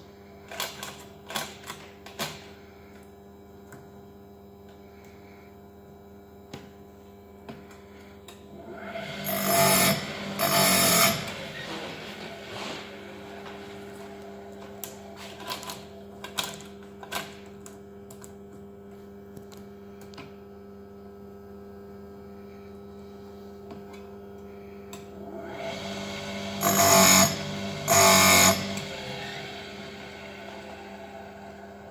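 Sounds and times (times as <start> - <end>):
sharpening grinder humming: 8.5 - 15.9, 25.2 - 31.9
loud grinding bursts: 8.6 - 15.4, 25.3 - 31.9.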